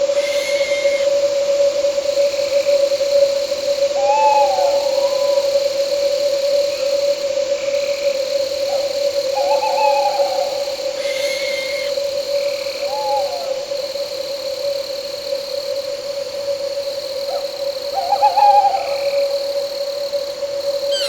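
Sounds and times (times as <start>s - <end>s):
owl hooting: 0.0s - 1.6s, 3.2s - 5.9s, 8.6s - 13.6s, 17.3s - 19.3s
crickets and night insects chirring: 0.0s - 21.0s.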